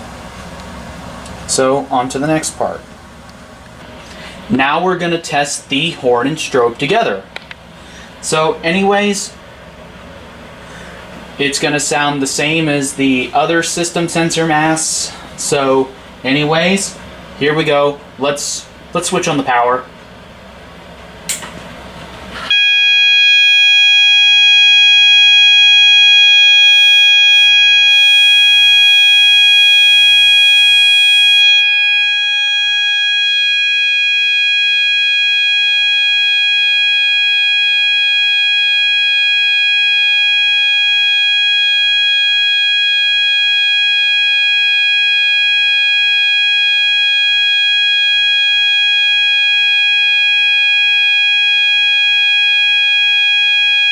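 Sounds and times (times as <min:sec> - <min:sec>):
continuous electronic alarm tone: 0:22.5 - 0:53.9.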